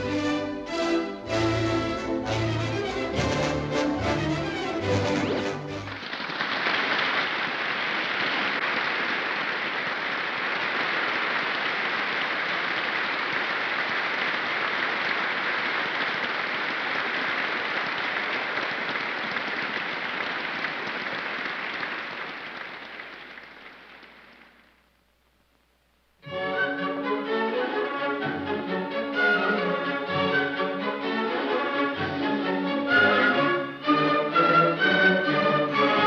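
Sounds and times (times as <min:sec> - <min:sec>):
audience applauding: 0:05.2 - 0:24.8.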